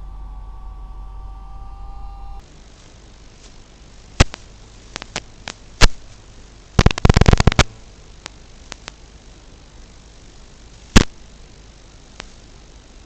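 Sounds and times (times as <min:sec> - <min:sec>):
static hiss: 0:00.0 - 0:13.0
rapid crackling: 0:02.6 - 0:10.2
faint clicks: 0:04.2 - 0:06.0, 0:06.8 - 0:09.0
sharp pops: 0:04.2 - 0:06.2, 0:06.8 - 0:09.0, 0:10.9 - 0:11.2.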